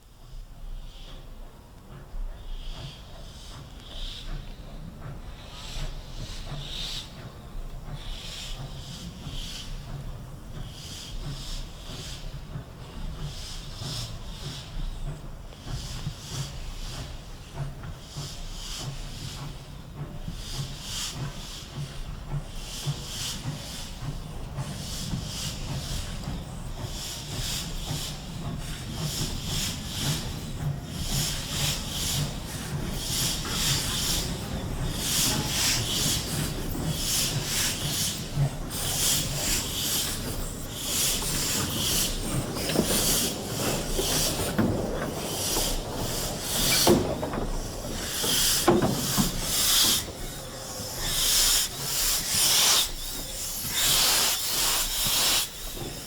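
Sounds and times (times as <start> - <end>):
steam locomotive chuffing: 0.0 - 56.0.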